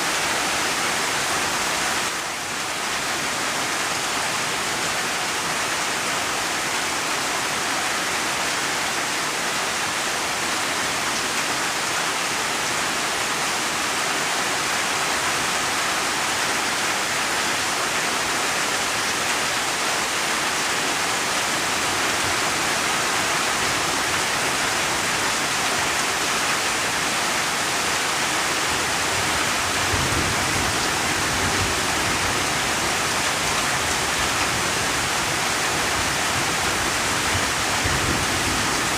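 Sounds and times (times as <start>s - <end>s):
steady rain hiss: 0.0s - 38.9s.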